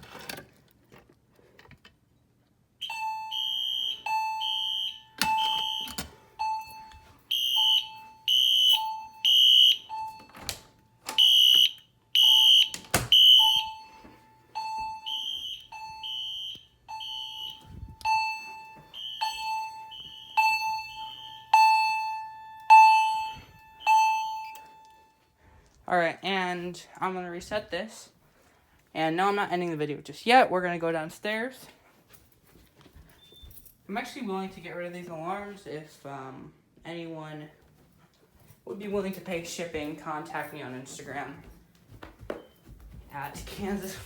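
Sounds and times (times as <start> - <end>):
buzzy alarm horn blasts: 2.8 - 10.2, 11.1 - 24.6
ringing chime tone: 2.9 - 10.4, 13.4 - 25.3.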